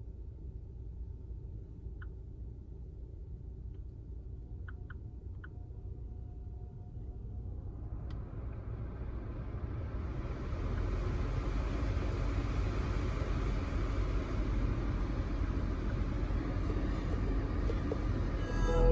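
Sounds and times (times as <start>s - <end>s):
rushing noise inside a car: 0.0s - 18.9s.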